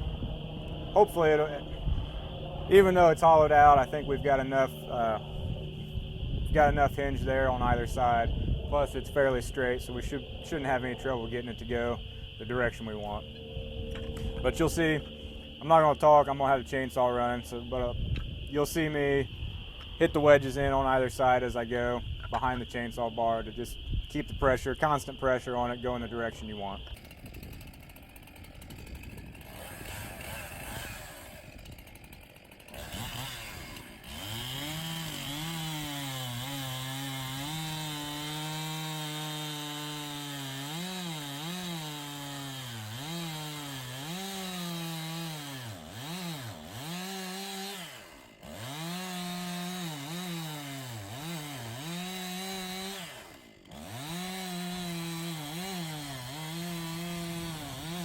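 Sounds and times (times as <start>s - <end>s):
chainsaw cutting wood: 26.8s - 58.0s.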